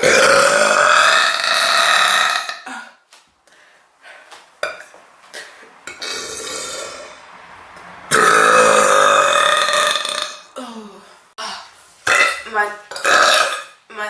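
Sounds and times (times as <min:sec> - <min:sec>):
woman burping loudly: 0:00.0 - 0:03.0, 0:05.9 - 0:07.2, 0:08.1 - 0:11.0, 0:12.0 - 0:13.8.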